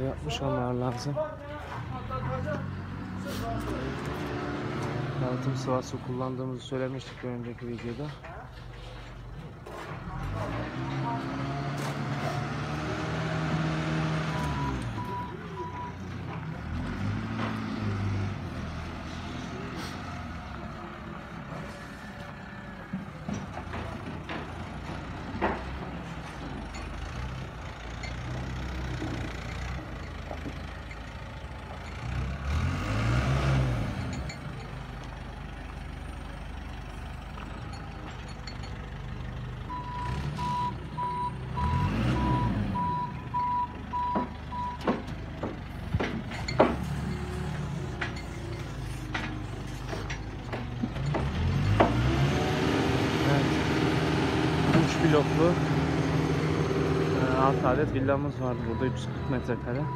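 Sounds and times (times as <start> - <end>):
diesel engine revving: 0.0 - 7.0, 9.4 - 59.9
reversing alarm beeping: 39.7 - 44.9, 58.5 - 59.9.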